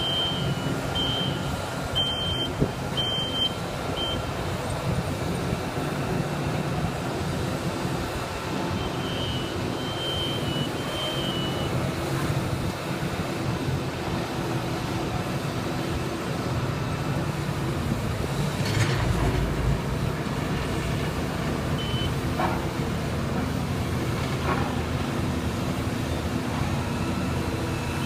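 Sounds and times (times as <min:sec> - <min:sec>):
backup alarm beeping: 0:00.0 - 0:04.3, 0:08.7 - 0:11.6, 0:21.8 - 0:22.2
construction machinery engine rumble: 0:00.0 - 0:28.0.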